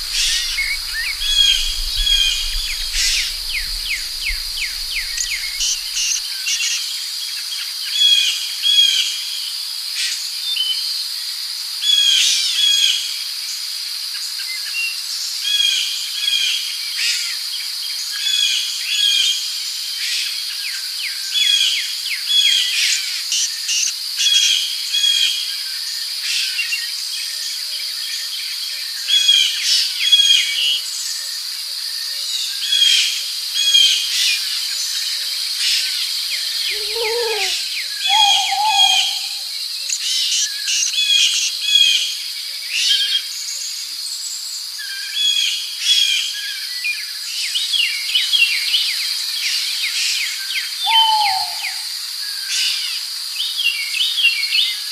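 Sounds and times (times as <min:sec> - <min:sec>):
songbirds chirping: 0:00.0 - 0:06.2, 0:36.7 - 0:39.6
high-pitched insect drone: 0:36.7 - 0:39.5.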